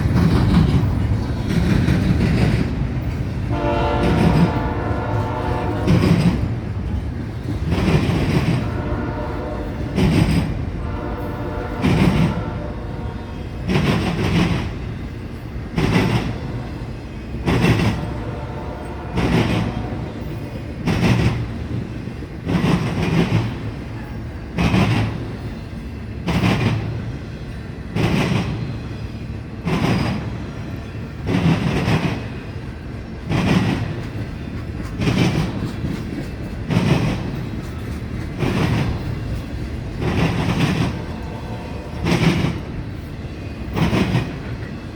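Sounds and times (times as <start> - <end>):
freight cars rolling on rails: 0.0 - 44.9
wheels clacking over rail joint: 33.2 - 42.8.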